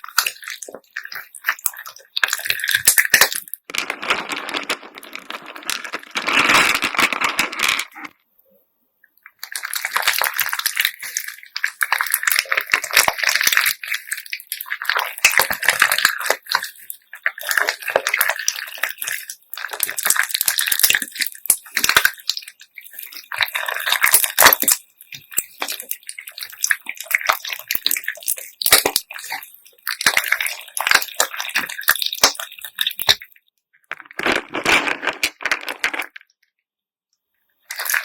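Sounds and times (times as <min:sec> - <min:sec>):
wet slime squelching: 0:00.0 - 0:08.2, 0:09.2 - 0:33.4, 0:37.7 - 0:38.0
beads clicking and clattering: 0:02.2 - 0:08.1, 0:33.9 - 0:36.2.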